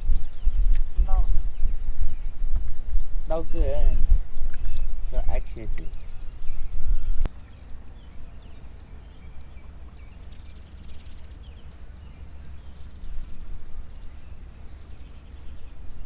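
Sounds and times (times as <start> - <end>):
steady low rumble: 0.0 - 16.0
faint bird chirps: 4.4 - 16.0.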